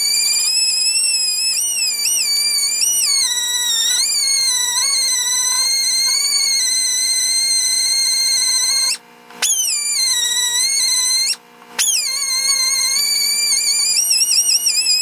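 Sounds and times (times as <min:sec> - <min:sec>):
high whistle-like electronic tone: 0:00.0 - 0:15.0.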